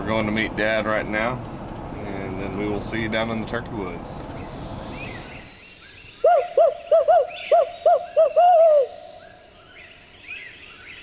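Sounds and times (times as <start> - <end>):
faint songbird chirps: 4.2 - 11.0
owl hooting: 6.1 - 11.0.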